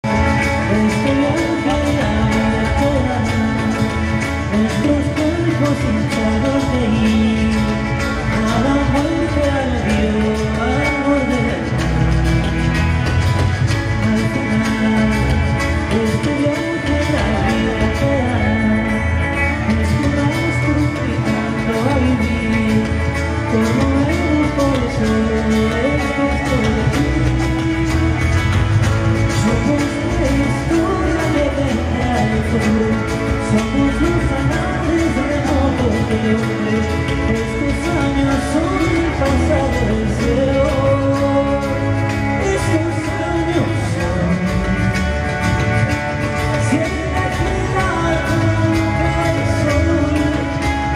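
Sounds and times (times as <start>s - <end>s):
guitar melody: 0.0s - 50.9s
live rock band playing: 0.0s - 50.9s.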